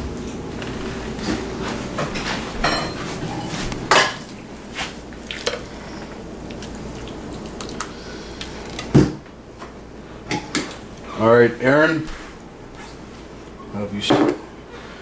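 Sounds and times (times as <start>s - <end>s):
low background hum: 0.0s - 15.0s
dishes and cutlery clattering: 2.0s - 4.2s.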